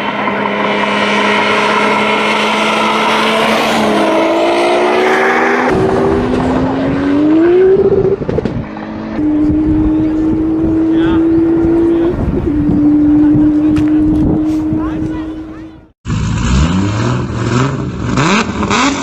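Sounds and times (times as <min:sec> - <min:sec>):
car engine revving: 0:00.0 - 0:19.0
exhaust crackles: 0:04.7 - 0:19.0.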